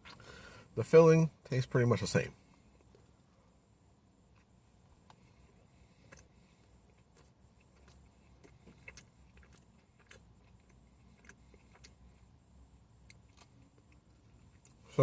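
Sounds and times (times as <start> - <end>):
low steady hum: 0.0 - 15.0
person chewing: 4.3 - 15.0.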